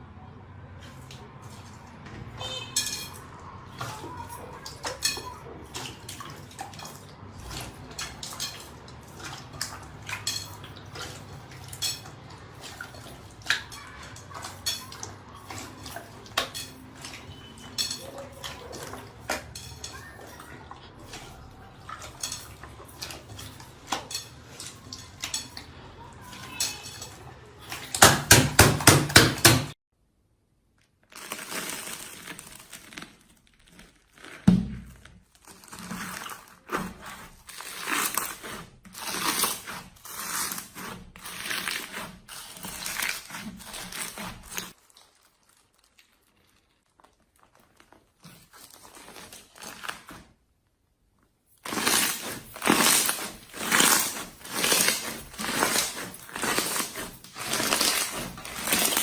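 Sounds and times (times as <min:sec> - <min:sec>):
dishes and cutlery clinking: 0:00.8 - 0:29.8.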